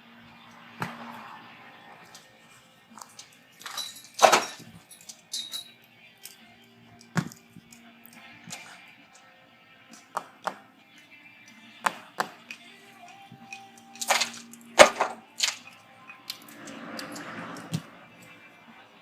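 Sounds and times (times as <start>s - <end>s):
faint radio music: 0.0s - 19.0s.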